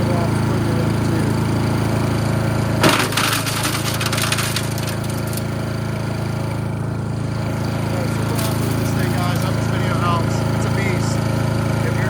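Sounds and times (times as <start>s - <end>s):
chipper engine running: 0.0s - 12.0s
material being shredded: 3.0s - 5.6s.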